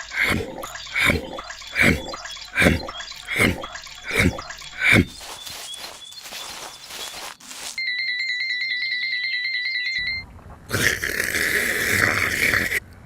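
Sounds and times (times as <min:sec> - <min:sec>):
harsh rasping noise: 0:00.0 - 0:07.3, 0:10.7 - 0:12.8.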